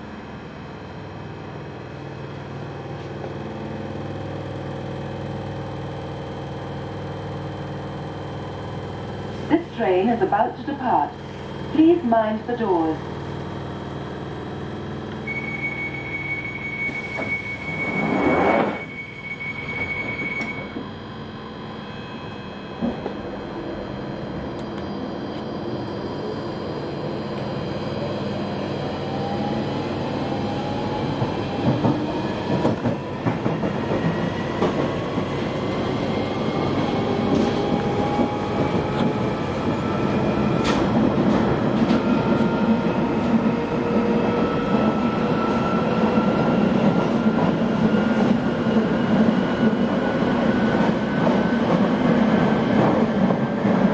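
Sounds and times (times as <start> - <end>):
train running noise: 0.0 - 53.9
train motor whine: 15.0 - 24.0
steady warning tone: 15.2 - 23.3.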